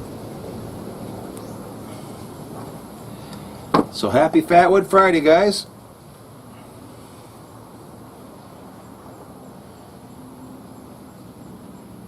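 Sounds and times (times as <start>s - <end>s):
faint insect chirp: 5.8s - 12.0s.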